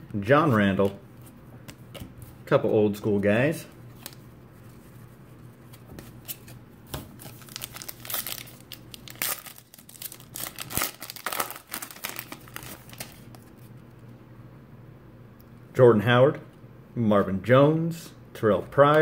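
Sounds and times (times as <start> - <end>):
wrapper crinkling and tearing: 7.2 - 13.5.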